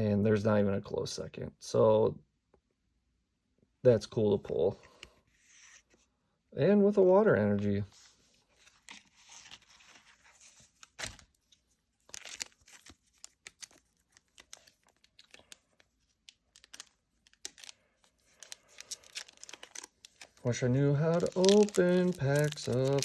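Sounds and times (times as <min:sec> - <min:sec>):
foil pack tearing and crinkling: 0:12.1 - 0:15.8, 0:16.5 - 0:23.0.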